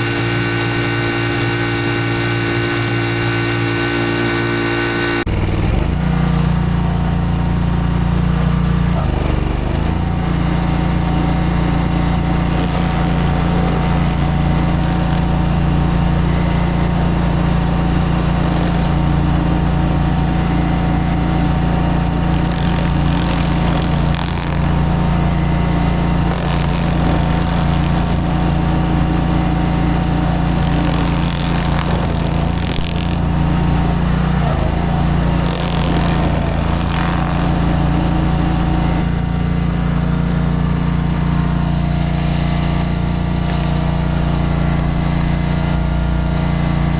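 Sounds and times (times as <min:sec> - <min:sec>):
stump grinder engine running: 0:00.0 - 0:46.9.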